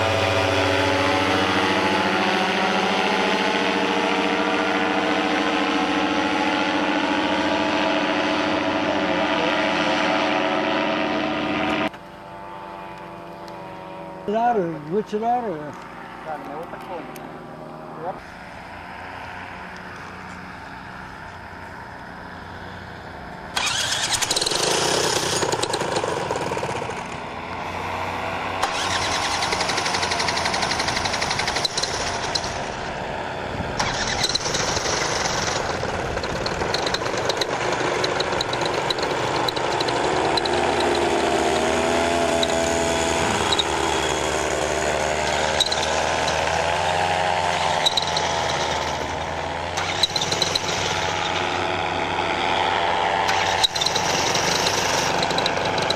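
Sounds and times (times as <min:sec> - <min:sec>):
paramotor engine running: 0:00.0 - 0:55.9.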